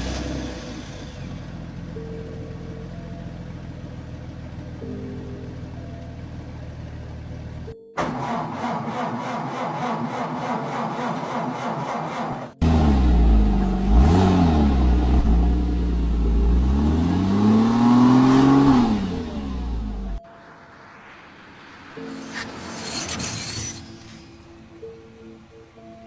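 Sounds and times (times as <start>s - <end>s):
engine revving: 0.0s - 1.6s, 6.9s - 24.9s
engine rhythmic clatter: 0.0s - 20.2s
engine humming: 0.0s - 26.0s.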